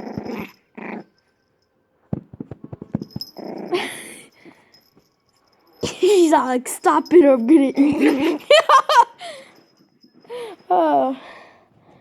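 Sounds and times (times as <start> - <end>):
dog growling: 0.0 - 1.1, 3.2 - 4.0.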